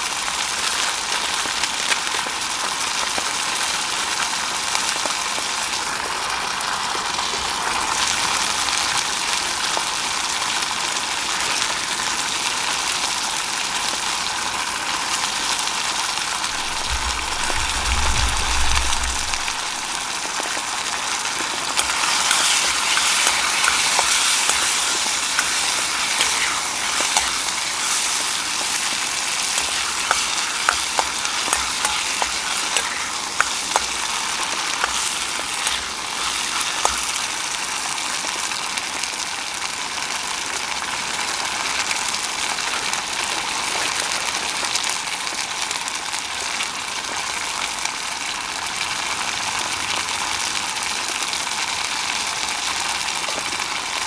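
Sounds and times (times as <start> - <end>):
food sizzling in a wok: 0.0 - 54.0
utensil knocking on wok: 22.3 - 37.3.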